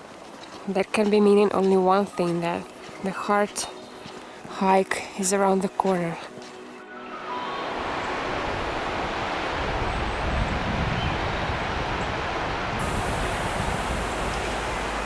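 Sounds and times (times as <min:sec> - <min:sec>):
wind blowing across microphone: 0:07.4 - 0:15.0.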